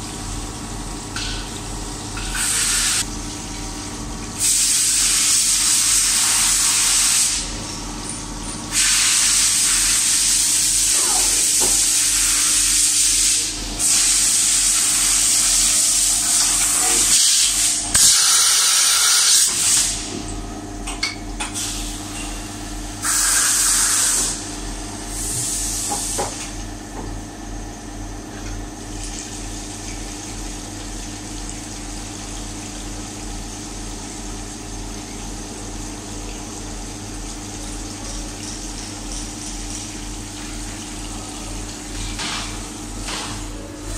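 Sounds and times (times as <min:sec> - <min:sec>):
loud hissing spray: 0:02.4 - 0:03.0, 0:04.4 - 0:07.5, 0:08.7 - 0:20.0, 0:23.0 - 0:24.4.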